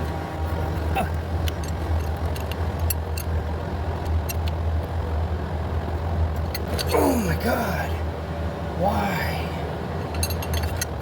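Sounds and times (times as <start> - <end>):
steady low hum: 0.0 - 11.0
small parts clicking and tapping: 1.0 - 5.0, 10.0 - 11.0.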